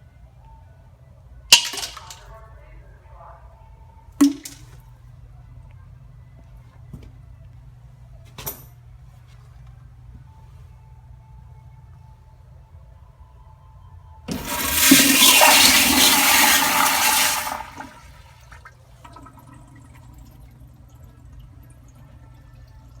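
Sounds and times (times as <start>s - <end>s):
toilet flushing: 14.3s - 23.0s
water trickling: 14.3s - 23.0s.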